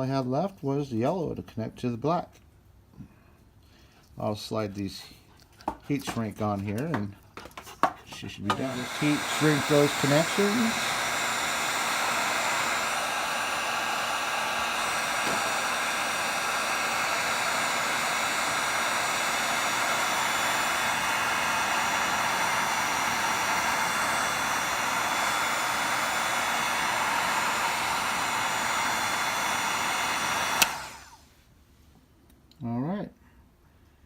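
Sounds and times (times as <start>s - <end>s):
heat gun blowing hot air: 6.0s - 31.4s.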